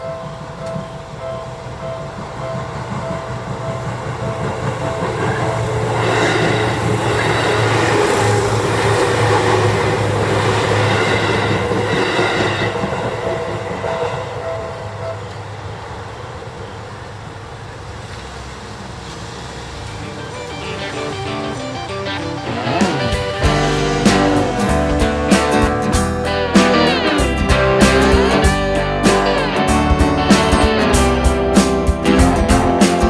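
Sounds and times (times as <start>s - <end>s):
level crossing alarm ringing: 0.0s - 17.0s, 19.8s - 25.4s
electric train passing: 0.0s - 33.0s.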